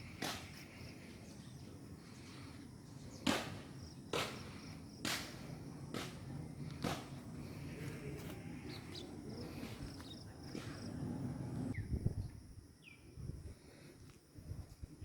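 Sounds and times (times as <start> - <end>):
faint steady background noise: 0.0 - 15.0
sharp footsteps: 3.2 - 11.0.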